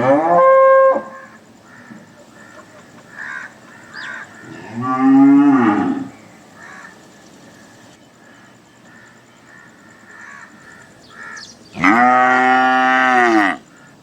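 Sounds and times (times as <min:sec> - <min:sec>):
cow mooing: 0:00.0 - 0:01.1, 0:04.5 - 0:06.1, 0:11.8 - 0:13.6.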